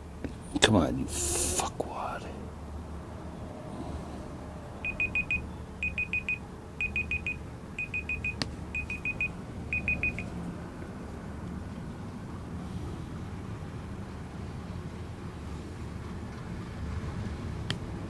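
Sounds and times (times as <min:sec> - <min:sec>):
high-pitched electronic beeping: 0:04.8 - 0:10.3.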